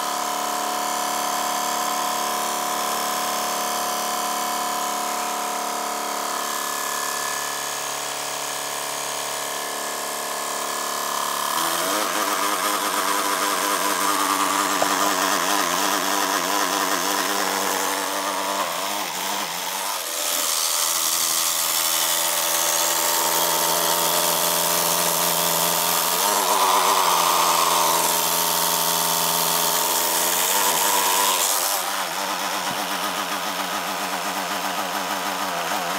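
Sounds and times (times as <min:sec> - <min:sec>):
laptop fan whining and grinding: 0:11.4 - 0:35.9.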